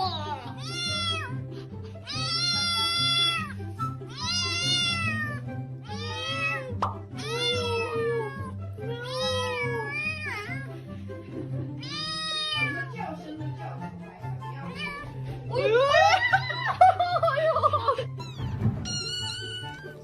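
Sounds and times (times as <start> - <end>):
cat meowing: 0.0 - 1.4, 2.0 - 10.8, 11.8 - 13.0, 14.6 - 15.2, 18.0 - 20.0
background music: 0.0 - 20.0.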